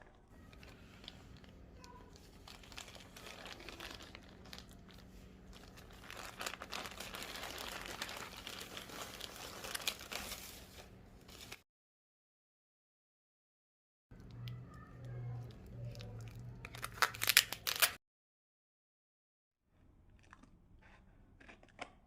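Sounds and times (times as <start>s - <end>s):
packaging crinkling and rustling: 0.4s - 11.6s, 15.8s - 18.0s.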